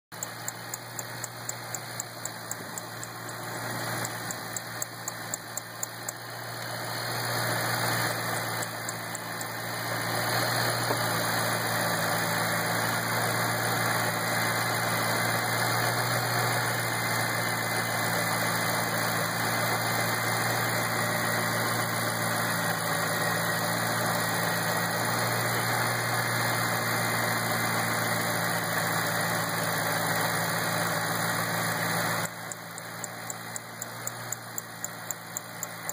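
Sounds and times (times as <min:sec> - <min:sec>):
car engine idling: 0:00.1 - 0:25.8, 0:27.9 - 0:35.9
quick regular ticking: 0:00.2 - 0:06.2, 0:08.2 - 0:09.6, 0:32.2 - 0:35.9.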